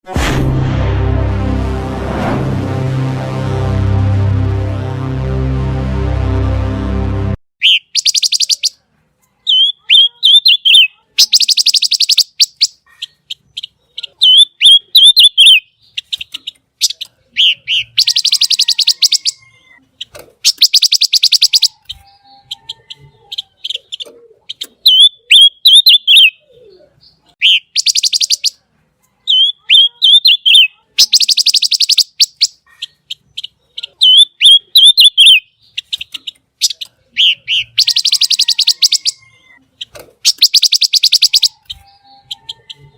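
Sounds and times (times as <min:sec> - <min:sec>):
songbird warbling and trilling: 0:07.6 - 0:08.8, 0:09.5 - 0:16.0, 0:16.8 - 0:19.5, 0:20.4 - 0:21.9, 0:27.4 - 0:28.5, 0:29.3 - 0:39.6, 0:40.2 - 0:42.8.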